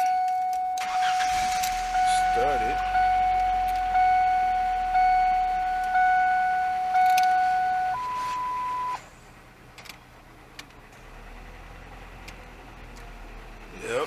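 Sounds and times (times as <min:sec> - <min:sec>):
dashboard warning chime: 0:00.0 - 0:09.0
high steady beep: 0:00.0 - 0:09.0.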